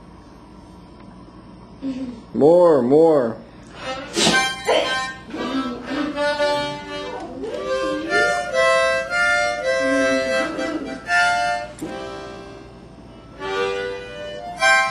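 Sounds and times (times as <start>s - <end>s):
instrument playing held notes: 3.8s - 14.9s.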